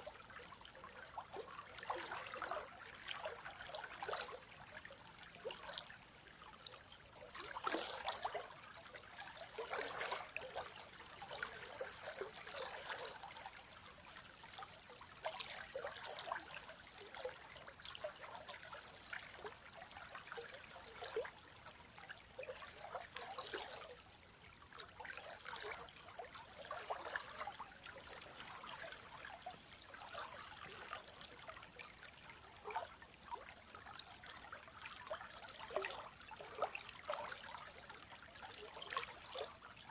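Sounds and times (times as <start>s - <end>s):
river water splashing: 1.3s - 4.5s, 7.2s - 13.8s.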